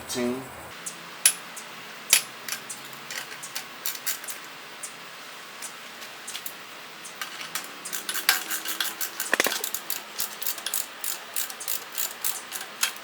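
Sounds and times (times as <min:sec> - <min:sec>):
metal hand tools clinking: 0:02.1 - 0:05.0, 0:05.6 - 0:13.0.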